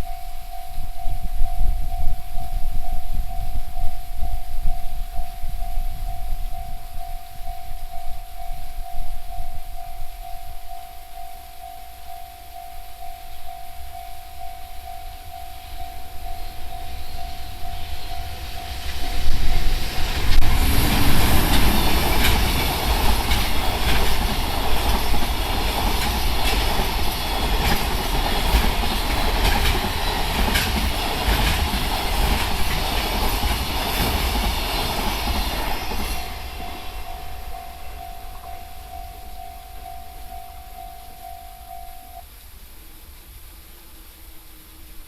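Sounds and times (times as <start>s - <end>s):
electric locomotive passing: 0.0s - 42.3s
level crossing warning bell: 0.0s - 42.3s
train wheels clickety-clack: 16.3s - 38.6s.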